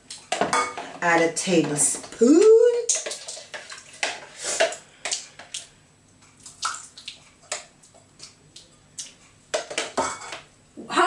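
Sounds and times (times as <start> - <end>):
wet mixing sound: 1.2 - 9.9.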